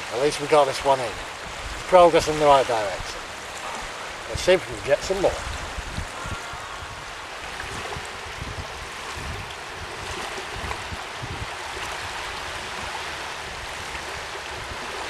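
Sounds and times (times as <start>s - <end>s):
waves lapping at shore: 0.0s - 15.0s
wind buffeting microphone: 0.0s - 15.0s.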